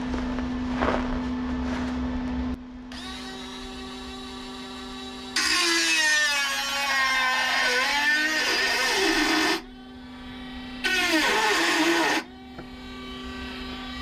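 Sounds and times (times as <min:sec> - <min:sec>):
steady low hum: 0:00.0 - 0:05.6, 0:06.8 - 0:14.0
angle grinder grinding metal: 0:05.2 - 0:09.7, 0:10.4 - 0:14.0.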